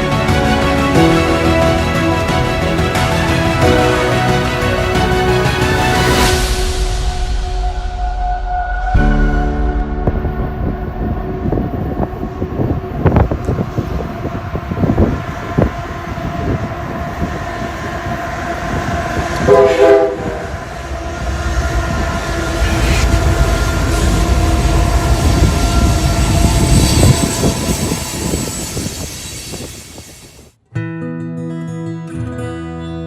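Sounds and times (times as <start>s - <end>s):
train horn: 0.0s - 29.6s
train rumbling by: 0.0s - 30.6s.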